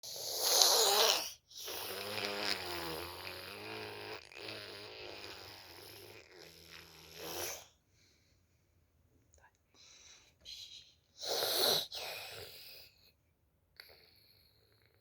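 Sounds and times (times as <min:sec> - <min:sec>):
child snoring: 0:00.0 - 0:07.7, 0:11.2 - 0:13.1.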